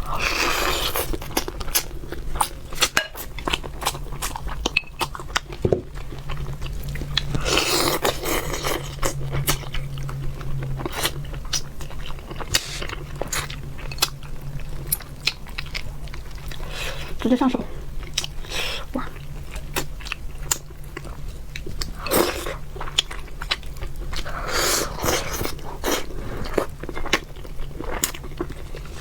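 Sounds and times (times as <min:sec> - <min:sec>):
crunching and chewing: 0:00.0 - 0:29.0.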